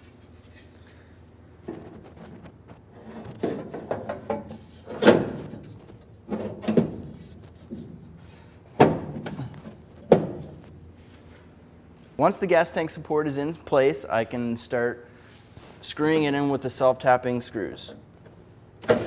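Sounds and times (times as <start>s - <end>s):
metallic knocks and clunks: 8.8s - 10.7s.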